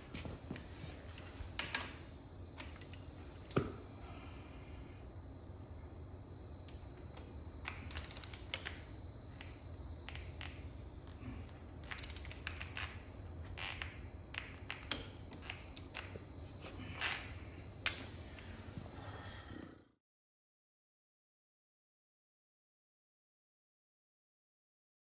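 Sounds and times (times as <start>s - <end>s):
low steady hum: 0.0s - 20.0s
tools clicking and clinking: 6.7s - 8.8s.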